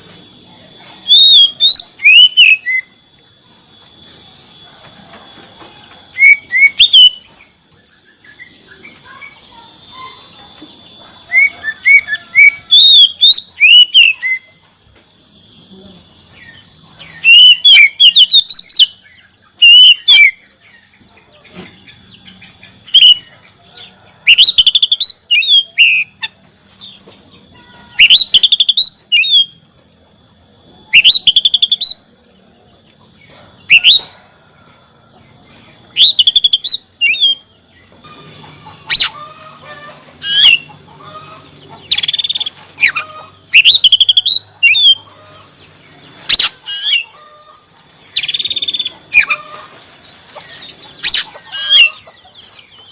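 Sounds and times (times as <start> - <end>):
bird whistles and trills: 1.0 - 3.0, 6.1 - 14.6, 16.1 - 27.0, 27.9 - 29.6, 30.9 - 32.1, 33.6 - 34.2, 35.9 - 37.8, 38.6 - 39.2, 40.2 - 45.2, 46.1 - 47.2, 48.1 - 49.4, 50.4 - 52.9.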